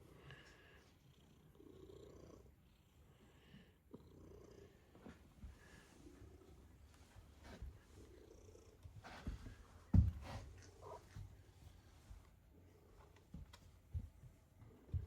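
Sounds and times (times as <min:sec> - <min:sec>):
cat purring: 0:00.1 - 0:11.6.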